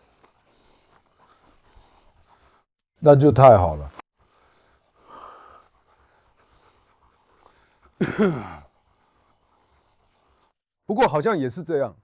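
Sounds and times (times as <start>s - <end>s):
short voiced pant: 0.0s - 2.7s, 4.2s - 10.6s
faint rustle: 4.2s - 10.6s.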